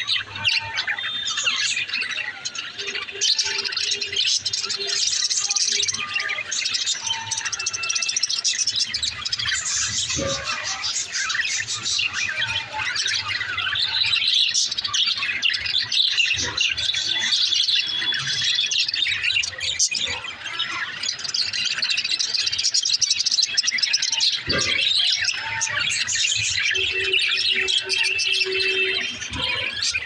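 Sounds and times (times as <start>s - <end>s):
budgerigars chirping: 0.0s - 30.0s.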